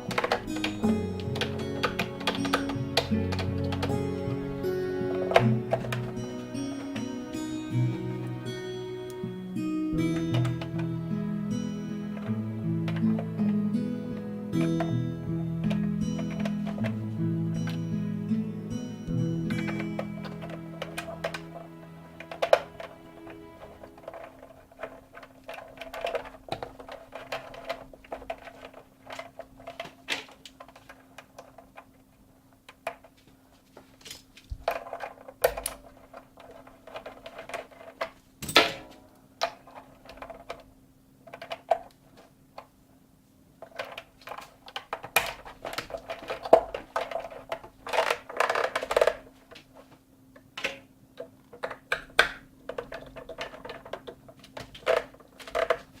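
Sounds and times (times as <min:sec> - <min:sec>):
metal parts clicking and knocking: 0:00.0 - 0:07.5, 0:14.5 - 0:17.0, 0:19.1 - 0:33.2, 0:34.0 - 0:42.0, 0:43.6 - 0:49.6, 0:50.4 - 0:56.0.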